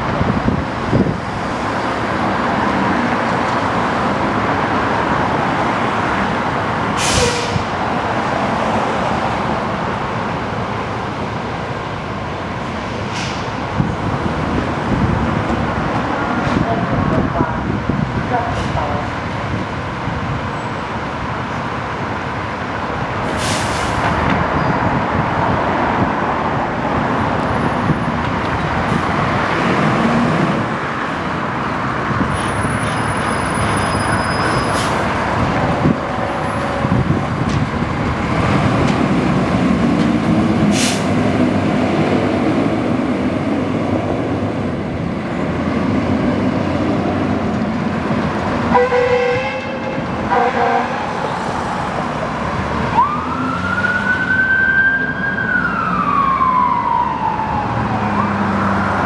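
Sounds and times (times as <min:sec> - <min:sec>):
air brake hisses: 0:06.9 - 0:07.8, 0:23.3 - 0:24.2, 0:40.7 - 0:41.3
diesel engine running: 0:27.0 - 0:48.6.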